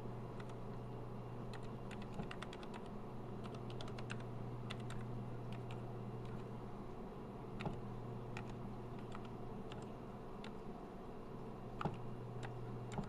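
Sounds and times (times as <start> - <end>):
steady low hum: 0.0 - 13.0
keyboard keys clicking: 1.5 - 6.4.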